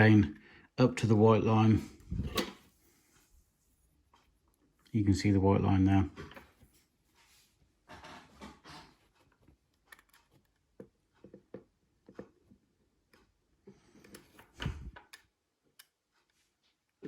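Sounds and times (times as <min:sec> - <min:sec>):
small clicks on plastic parts: 0:13.1 - 0:16.4.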